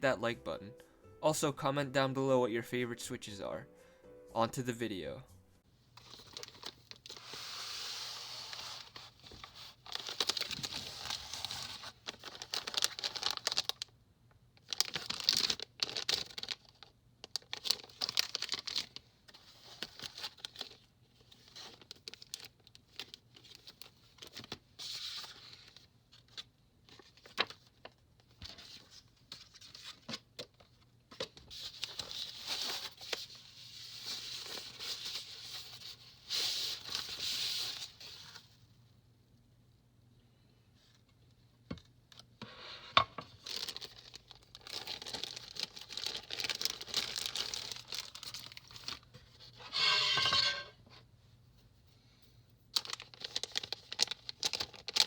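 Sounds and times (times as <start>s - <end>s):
plastic and paper crinkling: 6.0s - 13.9s, 14.6s - 38.6s, 43.3s - 50.6s, 52.8s - 55.0s.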